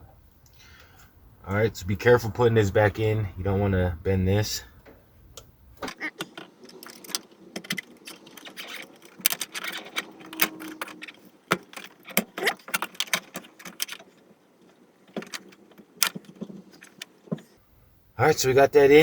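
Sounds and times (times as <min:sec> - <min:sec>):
fuel pump clicking and rattling: 0:04.8 - 0:17.6.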